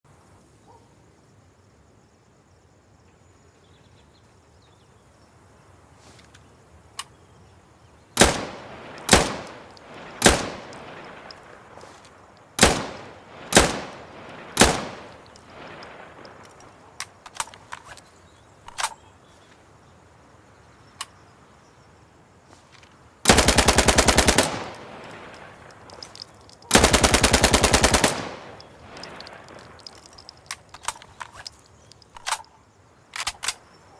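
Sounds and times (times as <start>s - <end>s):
automatic gunfire bursts: 8.2s - 11.1s, 12.6s - 15.2s, 23.3s - 25.2s, 26.7s - 29.2s
submachine gun single shots: 8.2s - 11.4s, 12.6s - 16.4s, 23.2s - 29.7s.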